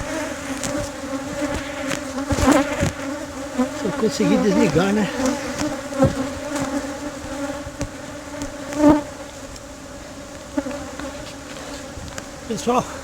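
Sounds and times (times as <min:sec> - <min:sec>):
bees buzzing: 0:00.0 - 0:13.0.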